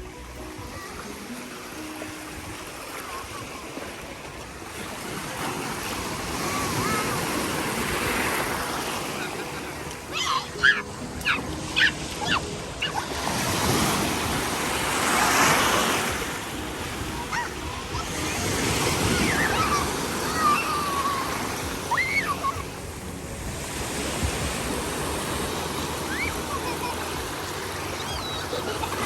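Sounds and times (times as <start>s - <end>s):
ocean waves breaking: 0.0s - 29.0s
faint high cries: 8.6s - 13.5s, 17.2s - 22.8s, 26.0s - 29.0s.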